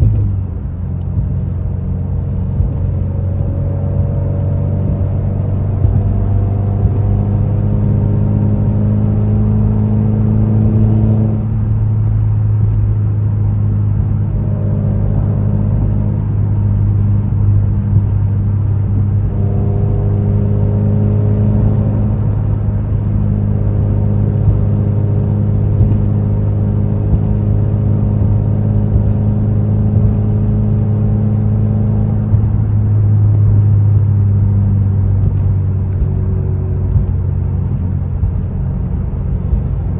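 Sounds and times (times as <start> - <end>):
car engine: 0.0 - 39.9
road drone: 0.0 - 39.9.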